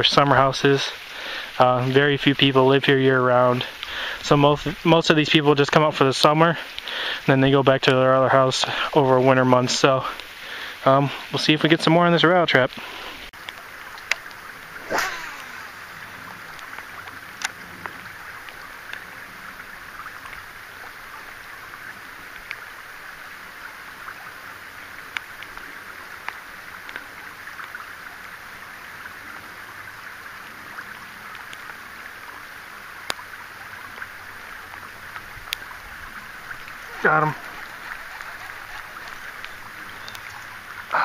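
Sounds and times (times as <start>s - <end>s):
rain hissing: 0.0s - 27.2s, 31.4s - 41.0s
raindrops tapping: 0.9s - 8.9s, 33.9s - 41.0s.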